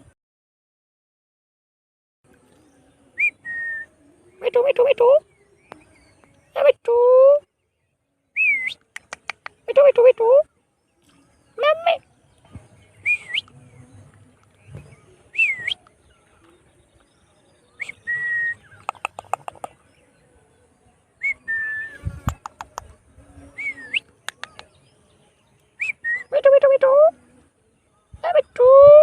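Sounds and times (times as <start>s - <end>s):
sharp clicks: 8.8s - 9.6s, 18.8s - 19.8s, 22.2s - 22.9s, 24.2s - 24.7s.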